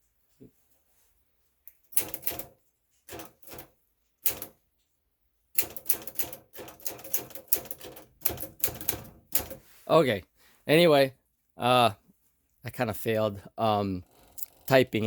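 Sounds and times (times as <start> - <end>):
typewriter keys clacking: 2.0 - 4.6, 5.6 - 9.6.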